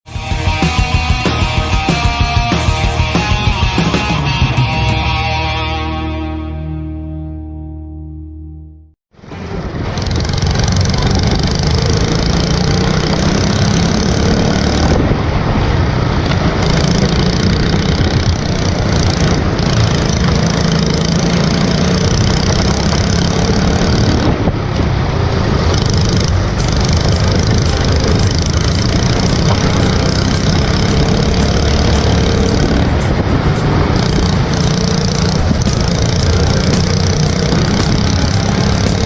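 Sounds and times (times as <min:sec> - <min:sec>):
kart engine running hard: 0:09.2 - 0:39.0
rushing wind noise: 0:09.2 - 0:39.0.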